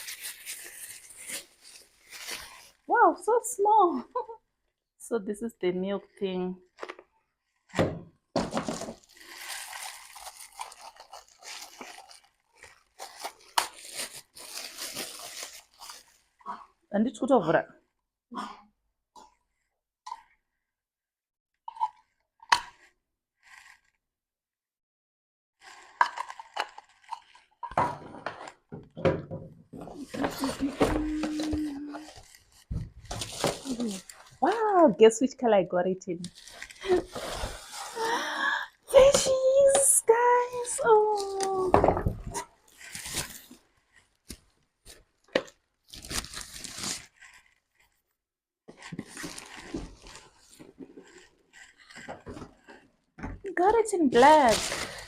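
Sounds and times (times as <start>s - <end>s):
packaging rustling: 0.0s - 2.9s, 8.4s - 16.4s, 25.6s - 27.6s, 29.8s - 34.8s, 36.2s - 38.2s, 38.9s - 48.0s, 48.7s - 52.9s, 54.1s - 55.0s
packaging crinkling and clicking: 8.7s - 16.2s, 25.7s - 27.5s, 36.3s - 37.1s.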